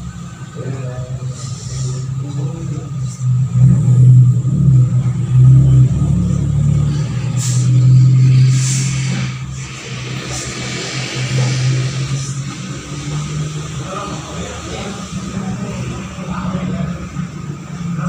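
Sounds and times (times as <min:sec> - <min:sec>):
vehicle engine humming: 0:00.0 - 0:18.0.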